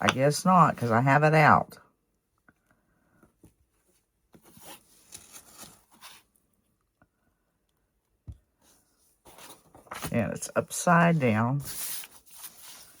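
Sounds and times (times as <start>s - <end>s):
rustling and scraping of supplies: 3.3s - 6.5s, 8.6s - 13.0s.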